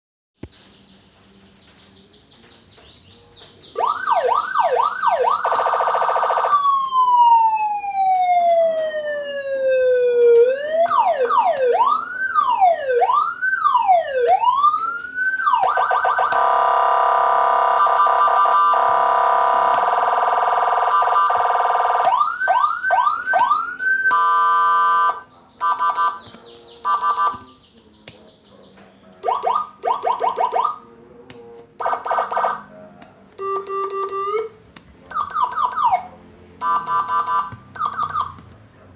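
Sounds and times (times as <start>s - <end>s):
electronic siren cycling patterns: 3.8s - 27.4s, 29.2s - 30.8s, 31.8s - 32.7s, 33.4s - 38.5s.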